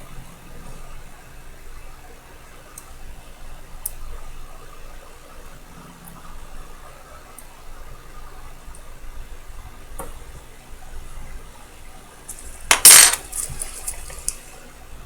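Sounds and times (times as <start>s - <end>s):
loud clatter: 12.7s - 13.8s.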